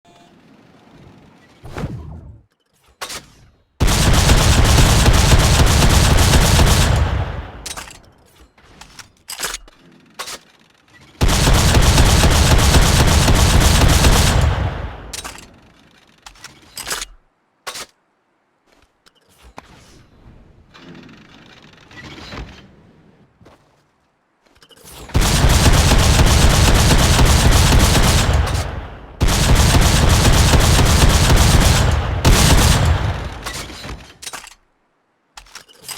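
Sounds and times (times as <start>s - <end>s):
shotgun automatic fire: 3.8s - 8.0s, 11.2s - 15.5s, 25.2s - 34.0s.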